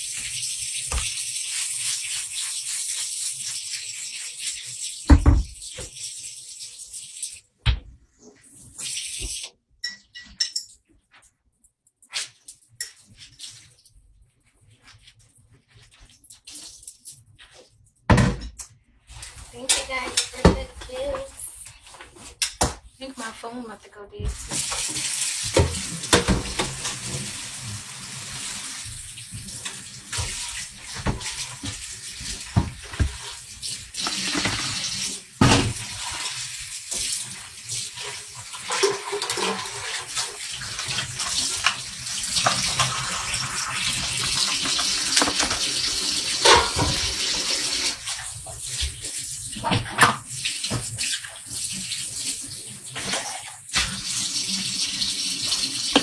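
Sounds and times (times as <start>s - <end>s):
tap water running into sink: 0.0s - 7.4s, 19.1s - 22.7s, 24.3s - 56.0s.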